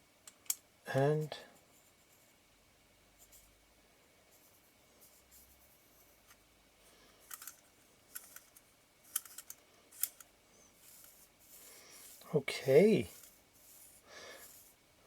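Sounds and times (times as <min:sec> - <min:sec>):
small metal parts clicking: 0:07.2 - 0:10.3.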